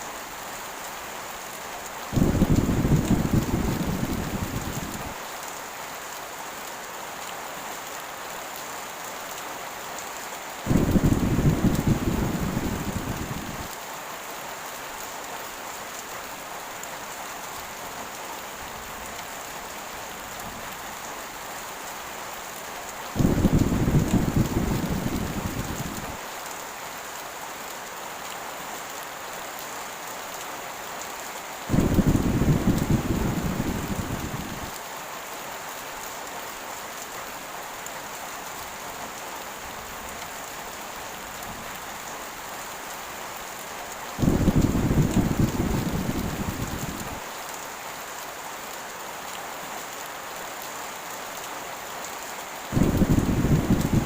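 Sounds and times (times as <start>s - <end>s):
heavy rain falling: 0.0s - 54.0s
thunder rumbling: 2.2s - 5.2s, 10.7s - 13.7s, 23.2s - 26.2s, 31.7s - 34.7s, 44.2s - 47.2s, 52.7s - 54.0s.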